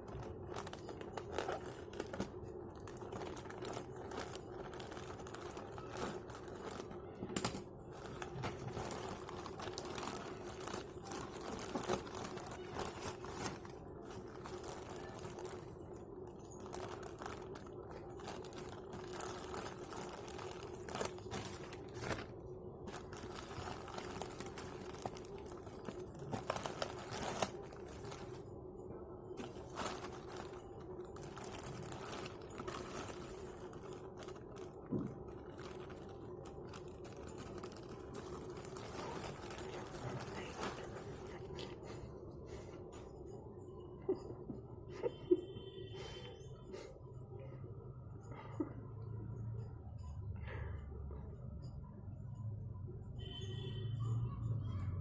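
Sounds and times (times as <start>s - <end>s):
packaging crinkling and rustling: 0.0s - 43.2s
faint steady hum: 0.0s - 54.4s.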